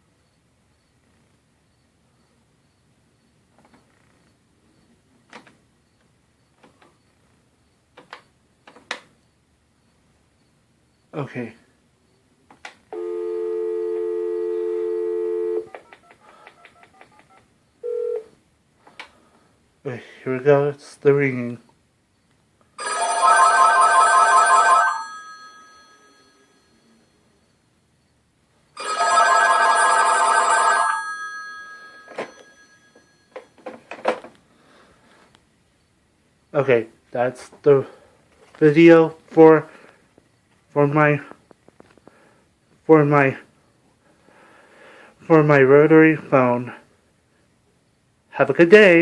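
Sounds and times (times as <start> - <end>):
telephone dial tone: 12.9 - 18.3, 22.8 - 26.5, 28.8 - 33.5.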